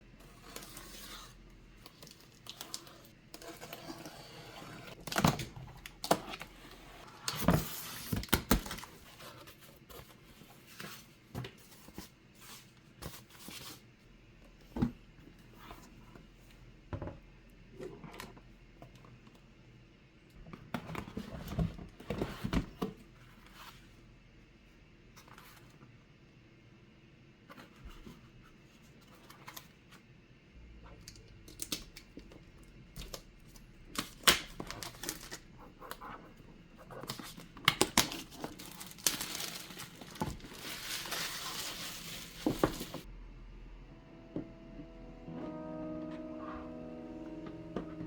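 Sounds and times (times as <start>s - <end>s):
cardboard packaging handled: 33.0s - 36.0s, 36.8s - 43.1s.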